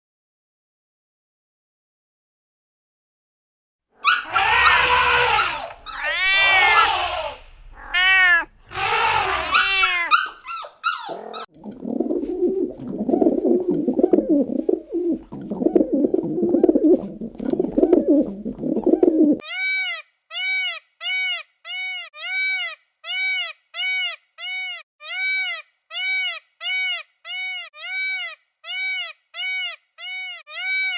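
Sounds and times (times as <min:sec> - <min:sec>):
loud rising and falling animal calls: 0:04.0 - 0:10.3
short animal calls: 0:04.0 - 0:10.4
low rough animal chattering: 0:04.2 - 0:10.2, 0:12.4 - 0:19.4.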